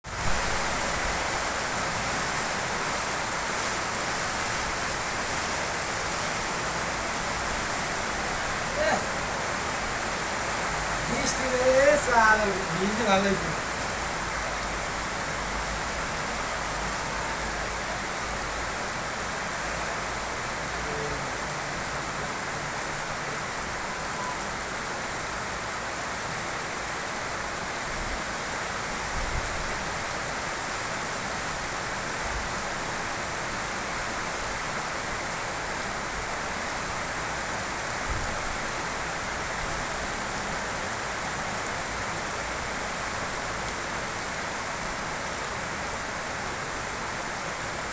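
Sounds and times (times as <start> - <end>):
steady rain falling: 0.0 - 47.9.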